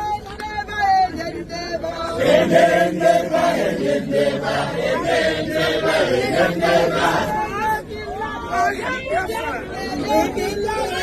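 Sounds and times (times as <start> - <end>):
group chanting in unison: 2.0 - 7.7.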